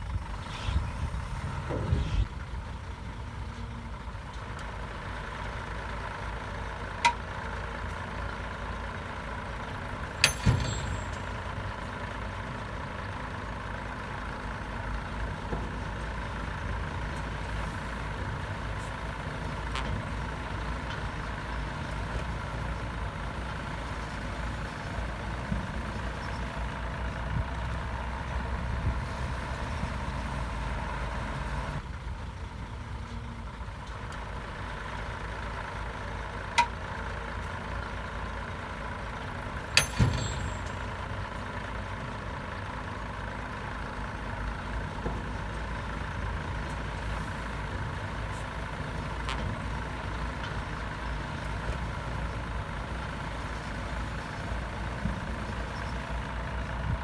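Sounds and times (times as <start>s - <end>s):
bulldozer diesel engine running: 0.0s - 57.0s
sharp metallic clanks: 10.2s - 11.6s, 39.8s - 41.1s.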